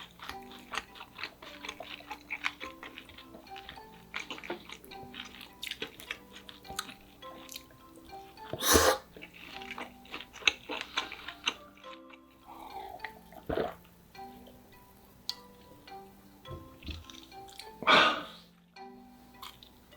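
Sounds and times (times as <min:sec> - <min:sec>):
chewing and wet mouth clicks: 0:00.0 - 0:08.1, 0:17.1 - 0:17.8
soft background music: 0:00.0 - 0:19.9.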